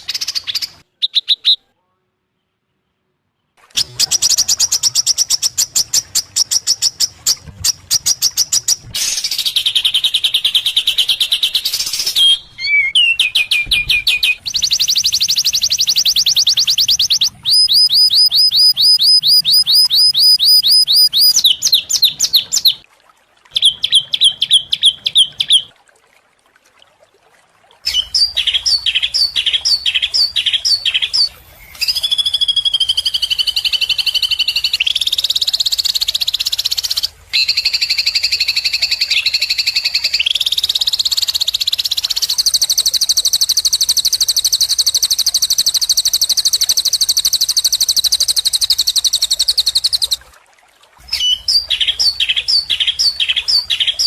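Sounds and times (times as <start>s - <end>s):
songbirds chirping and trilling: 27.9s - 42.4s.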